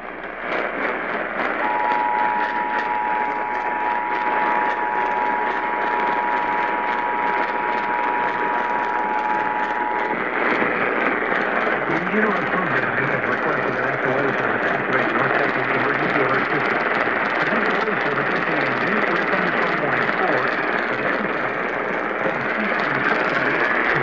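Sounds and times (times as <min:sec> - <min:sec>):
radio static hiss: 0:00.0 - 0:24.0
two-tone alert signal: 0:01.6 - 0:06.8.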